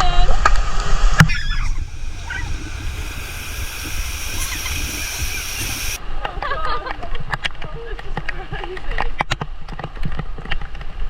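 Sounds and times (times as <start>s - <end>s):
voices: 1.4s - 6.0s.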